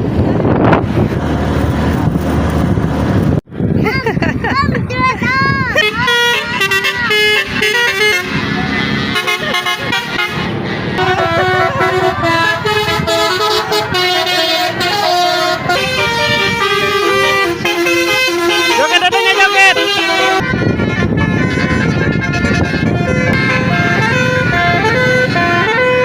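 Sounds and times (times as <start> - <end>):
multi-tone air horn melody: 5.7 - 26.0.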